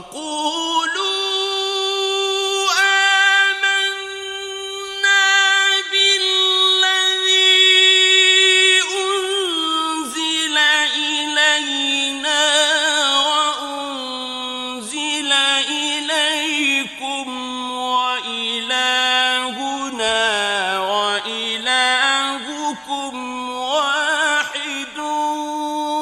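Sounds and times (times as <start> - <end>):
man reciting melodically: 0.0 - 26.0.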